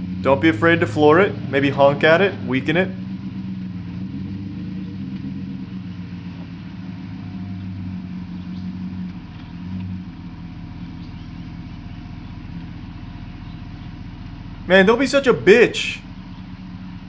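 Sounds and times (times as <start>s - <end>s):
truck engine under load: 0.0s - 17.0s.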